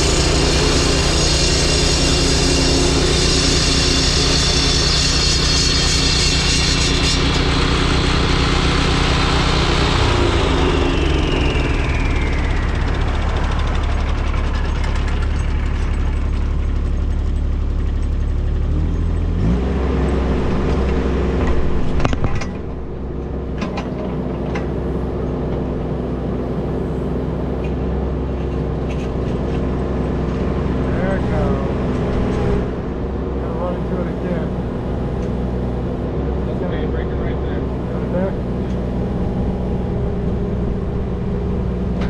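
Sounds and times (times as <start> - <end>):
machinery engines running: 0.0 - 42.0
sharp knocks and clatter: 13.4 - 18.8, 20.6 - 22.8, 23.5 - 24.8.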